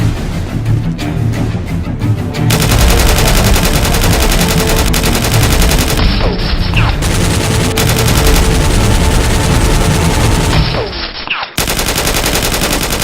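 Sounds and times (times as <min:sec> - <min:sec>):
background music: 0:00.0 - 0:13.0
rapid automatic gunfire: 0:02.5 - 0:11.0, 0:11.6 - 0:13.0.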